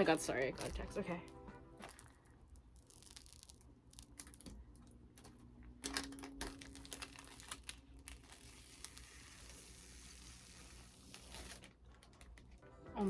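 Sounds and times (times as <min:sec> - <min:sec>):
plastic crinkling and clicking: 0:01.8 - 0:09.2, 0:11.1 - 0:12.6.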